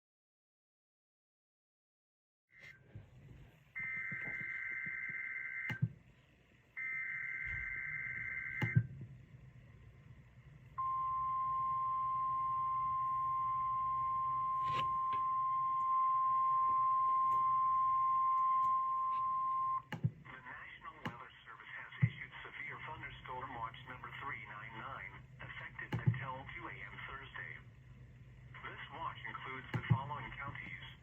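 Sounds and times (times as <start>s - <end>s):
steady single-pitch alarm tone: 3.8s - 6.0s, 6.8s - 8.9s, 10.8s - 19.9s
screechy data tones: 6.8s - 8.8s.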